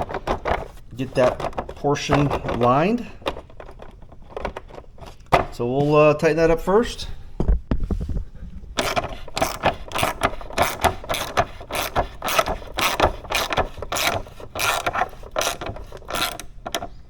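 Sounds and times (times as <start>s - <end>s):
ratchet wrench clicking: 8.8s - 16.8s.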